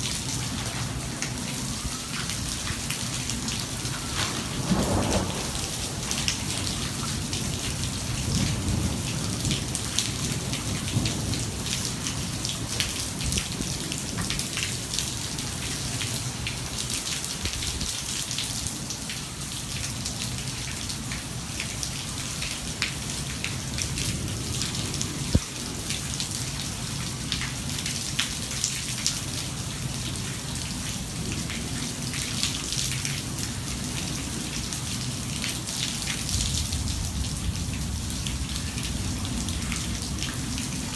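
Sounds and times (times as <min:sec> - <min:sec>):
low thunder rumble: 0:00.0 - 0:16.7, 0:33.0 - 0:40.9
heavy rain pouring: 0:00.0 - 0:40.9
raindrops tapping on surfaces: 0:00.0 - 0:40.9.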